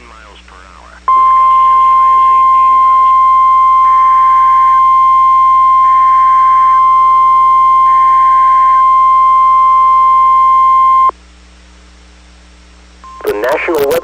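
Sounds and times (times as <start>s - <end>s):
loud steady alarm beep: 1.1s - 11.1s
faint data tone bursts: 1.1s - 11.2s, 13.0s - 14.0s.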